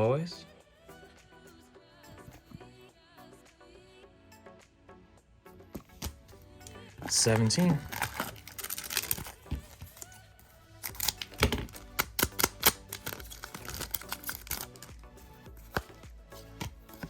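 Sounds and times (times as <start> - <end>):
quiet background music: 0.0 - 17.0
cards clicking and rustling: 7.0 - 10.2, 10.8 - 17.0.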